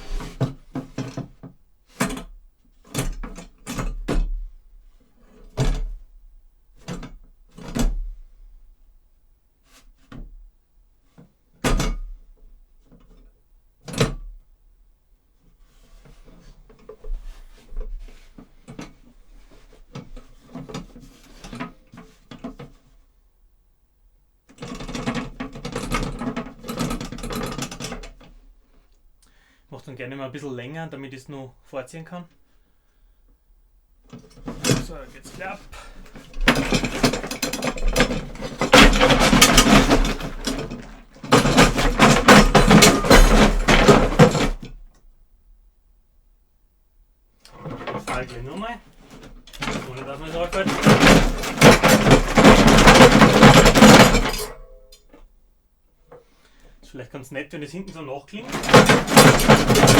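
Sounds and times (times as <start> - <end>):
heavy clunks and rattles: 0.0 - 1.6, 34.2 - 44.9, 47.5 - 55.2, 58.4 - 59.9
mechanical knocks and clacks: 34.5 - 44.6, 47.6 - 54.9, 58.4 - 59.9.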